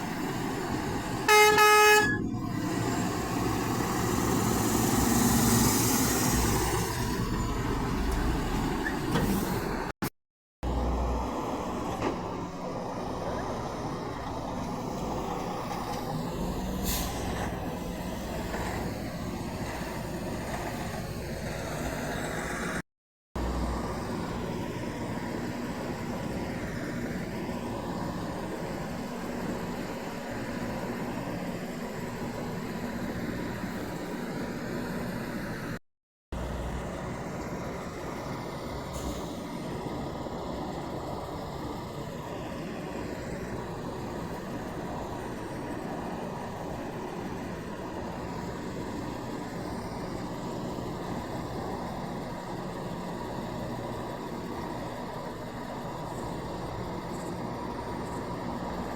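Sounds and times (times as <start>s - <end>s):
truck diesel engine idling: 0.0s - 5.0s.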